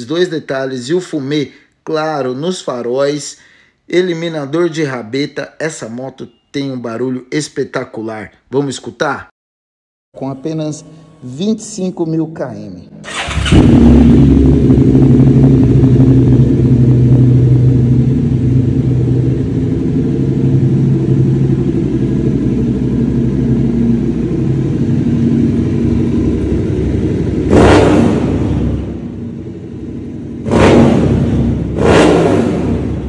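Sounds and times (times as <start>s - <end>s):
motorcycle engine idling: 13.1s - 27.5s.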